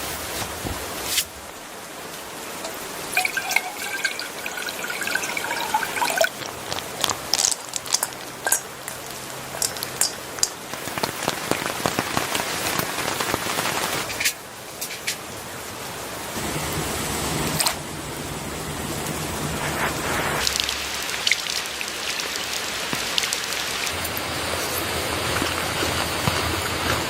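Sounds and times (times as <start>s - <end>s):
rain falling: 0.0s - 27.0s
raindrops ticking on a surface: 2.0s - 16.9s, 20.4s - 27.0s.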